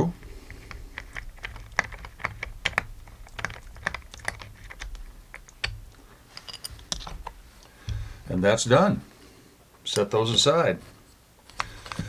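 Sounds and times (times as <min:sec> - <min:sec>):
screwdriver clicks and taps: 0:00.5 - 0:08.1, 0:11.5 - 0:12.0.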